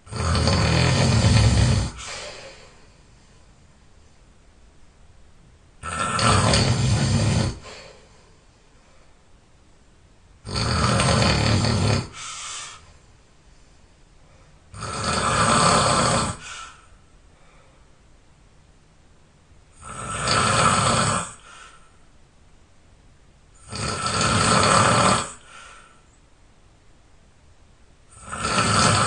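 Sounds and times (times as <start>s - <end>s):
person snoring loudly: 0.0s - 2.6s, 5.8s - 7.8s, 10.4s - 12.7s, 14.7s - 16.8s, 19.8s - 21.5s, 23.6s - 25.5s, 28.1s - 29.0s
quiet breathing: 0.0s - 4.4s, 6.3s - 9.5s, 10.6s - 18.2s, 19.7s - 22.2s, 24.5s - 26.3s.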